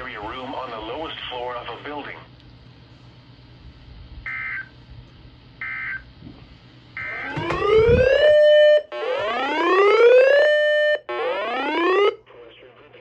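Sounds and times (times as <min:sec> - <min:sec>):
rising electronic siren tone: 0:07.0 - 0:12.2.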